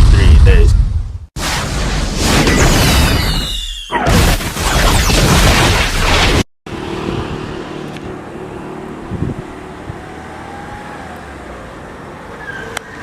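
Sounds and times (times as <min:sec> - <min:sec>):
road traffic rumble: 0:06.7 - 0:13.0.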